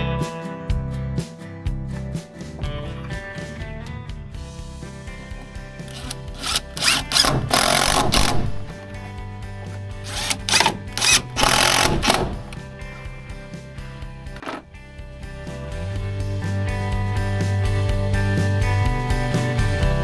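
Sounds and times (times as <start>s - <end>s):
background music: 0.0s - 20.0s
power drill running: 5.9s - 8.8s, 10.1s - 12.6s.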